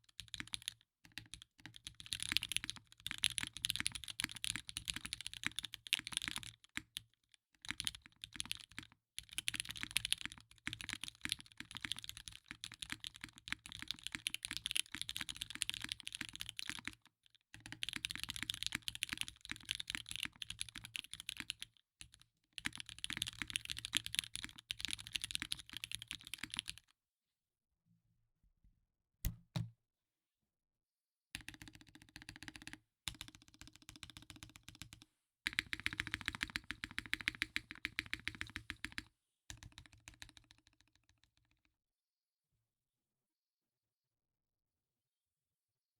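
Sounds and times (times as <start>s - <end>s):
mechanical keyboard typing: 0.2s - 7.0s, 9.4s - 17.0s, 17.6s - 21.6s.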